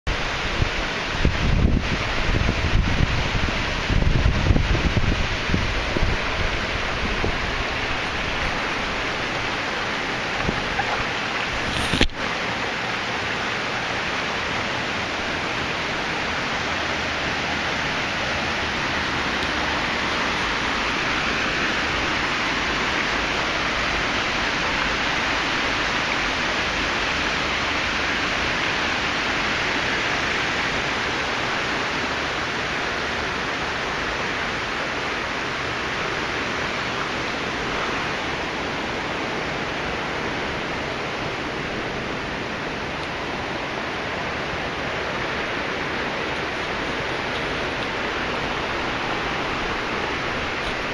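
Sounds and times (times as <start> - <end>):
small waterfall rushing: 0.1 - 50.9.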